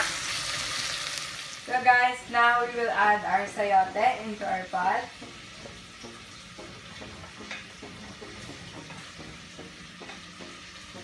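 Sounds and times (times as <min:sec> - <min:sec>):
chicken sizzling in oil: 0:00.0 - 0:02.1.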